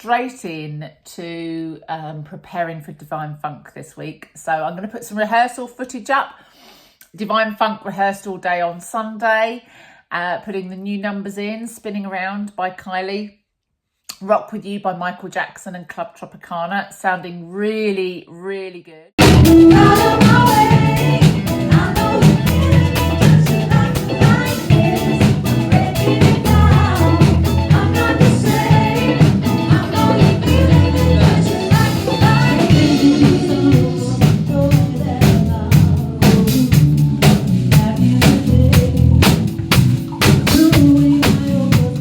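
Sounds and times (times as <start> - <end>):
person singing: 19.2 - 39.6, 40.3 - 42.0
drum hits: 19.2 - 42.0
funk band playing: 19.2 - 42.0.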